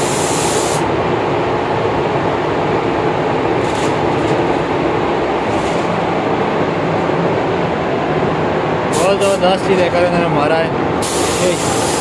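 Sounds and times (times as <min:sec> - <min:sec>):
spray booth air rushing: 0:00.0 - 0:00.9, 0:11.0 - 0:12.0
spray gun hissing: 0:00.0 - 0:00.9, 0:11.0 - 0:12.0.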